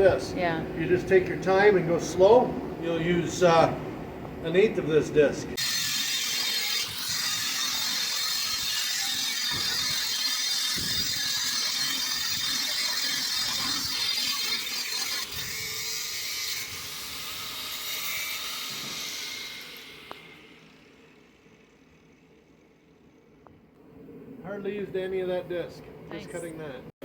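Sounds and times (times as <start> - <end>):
cut-off disc grinding steel: 5.6 - 23.2.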